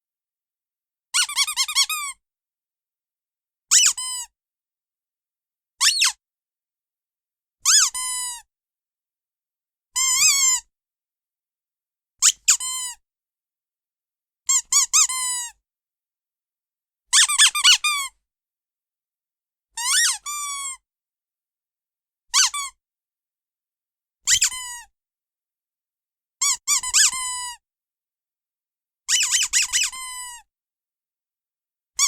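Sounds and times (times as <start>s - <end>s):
squeaky dog toy squeaking: 1.2s - 2.2s, 3.7s - 4.3s, 5.8s - 6.2s, 7.6s - 8.4s, 10.0s - 10.7s, 12.2s - 13.0s, 14.5s - 15.5s, 17.1s - 18.1s, 19.8s - 20.8s, 22.4s - 22.8s, 24.3s - 24.9s, 26.4s - 27.6s, 29.1s - 30.4s.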